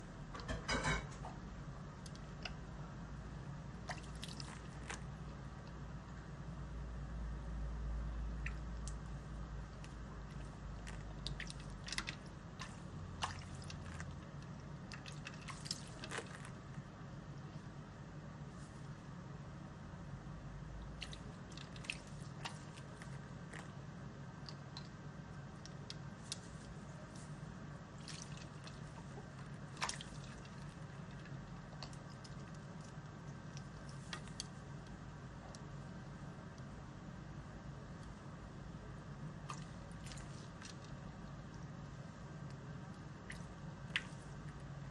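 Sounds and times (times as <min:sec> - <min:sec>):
steady low hum: 0:00.0 - 0:44.9
small wet splashes: 0:03.8 - 0:05.2, 0:09.8 - 0:16.6, 0:20.8 - 0:23.8, 0:27.9 - 0:34.6, 0:39.4 - 0:41.7, 0:42.9 - 0:44.6.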